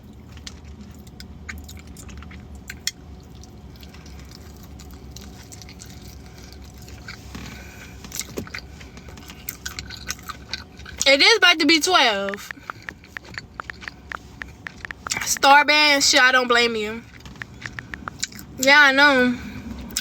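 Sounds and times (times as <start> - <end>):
steady low hum: 0.0 - 20.0
food handling clicks and rustles: 0.1 - 11.2, 12.2 - 15.4, 17.0 - 18.5
mouth-open chewing: 0.4 - 11.2, 11.9 - 16.0, 17.0 - 18.6.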